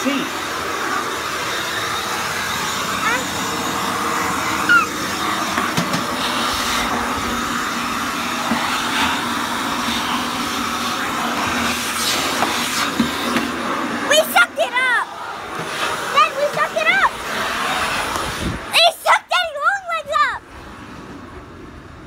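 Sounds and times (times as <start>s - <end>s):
vacuum cleaner running: 0.0s - 19.0s, 20.4s - 22.0s.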